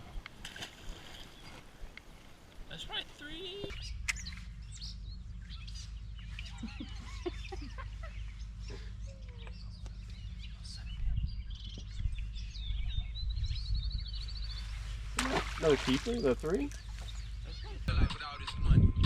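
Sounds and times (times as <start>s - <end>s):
birds chirping and calling: 2.7s - 19.0s
low rumble: 3.9s - 15.6s.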